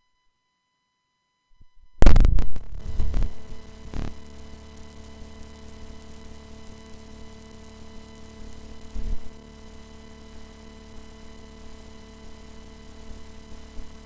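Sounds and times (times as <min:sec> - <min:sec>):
steady hum with held tones: 0:01.2 - 0:14.0
loud thump: 0:02.0 - 0:02.6.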